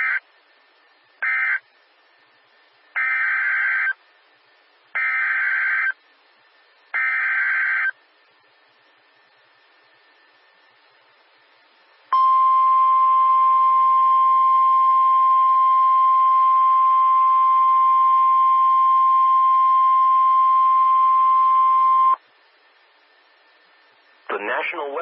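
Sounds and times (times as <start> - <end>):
steady loud warning alarm tone: 3.0 - 4.0, 5.0 - 6.0, 7.0 - 8.0, 12.1 - 22.2.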